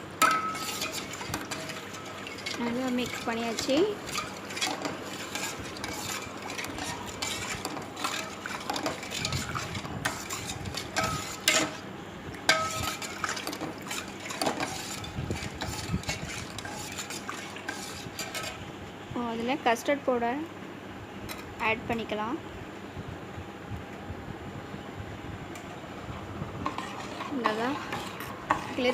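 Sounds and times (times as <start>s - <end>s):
spoon scraping and clinking pan: 0.2s - 11.8s, 12.5s - 18.6s, 26.7s - 28.9s.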